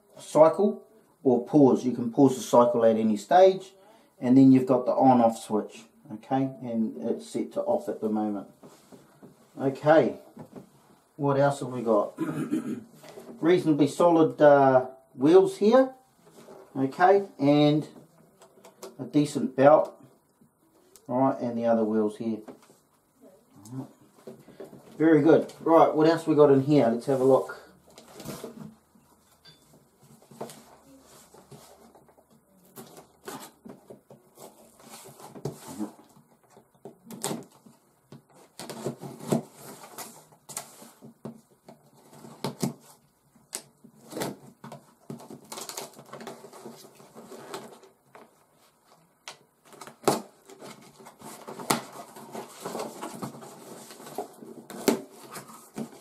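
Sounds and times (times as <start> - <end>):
packaging rustling: 43.6 - 56.0
rummaging in cardboard box: 49.7 - 56.0.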